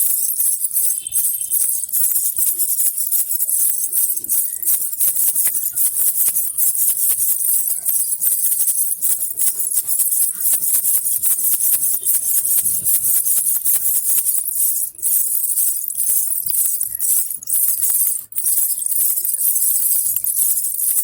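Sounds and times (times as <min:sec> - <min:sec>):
baby rattle with jingling bells: 0:00.0 - 0:21.0.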